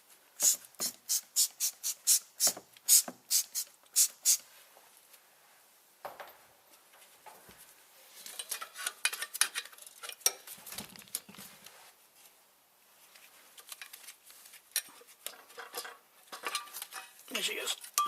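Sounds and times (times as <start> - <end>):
metallic clinking and scraping: 8.2 - 10.5, 13.6 - 18.0.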